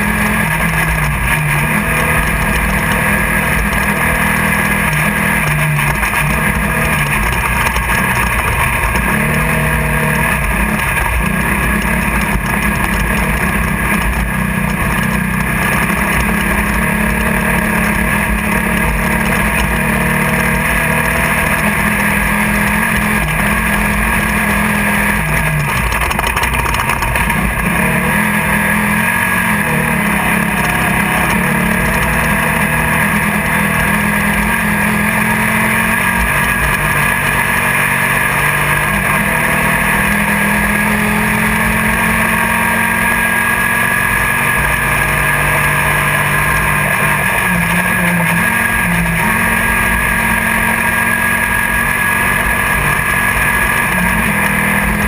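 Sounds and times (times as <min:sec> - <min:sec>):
race car engine running: 0:00.0 - 0:55.0
chassis rattling: 0:00.5 - 0:33.2.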